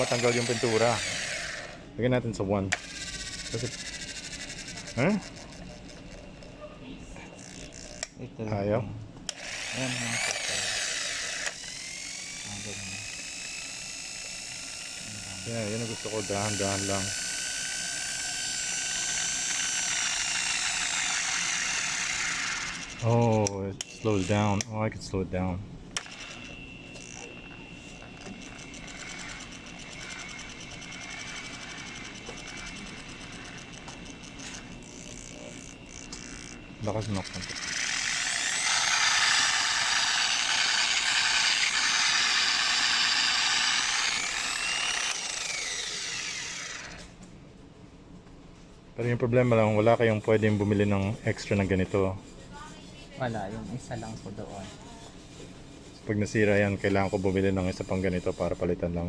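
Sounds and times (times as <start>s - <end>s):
polisher motor whining: 0.0s - 1.9s, 2.7s - 6.6s, 9.3s - 24.5s, 26.0s - 47.2s.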